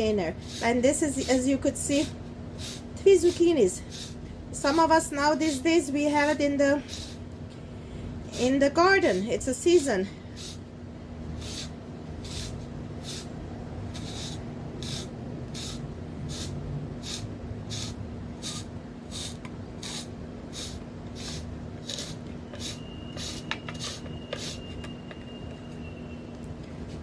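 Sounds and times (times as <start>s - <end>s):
zucchini rasping across slicer blade: 0.0s - 7.2s, 11.4s - 13.3s, 13.9s - 24.8s.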